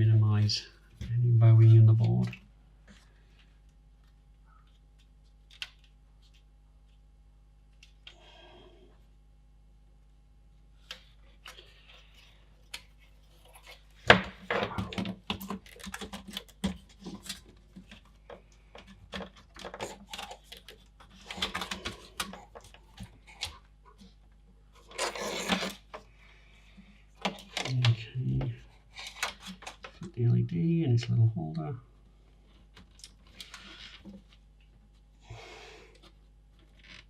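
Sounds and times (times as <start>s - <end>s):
plastic parts clicking and rattling: 10.9s - 24.2s, 27.2s - 28.0s, 28.9s - 30.2s.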